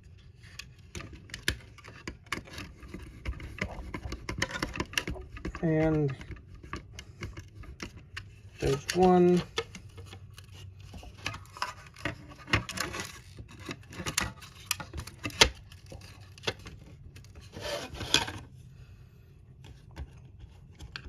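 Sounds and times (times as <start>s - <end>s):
short scraping rubs: 17.5s - 18.3s.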